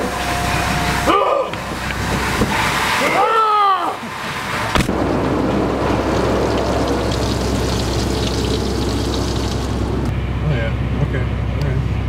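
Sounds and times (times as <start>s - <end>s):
car wash machinery hum: 0.0s - 12.0s
water jets spraying onto car: 1.7s - 10.1s.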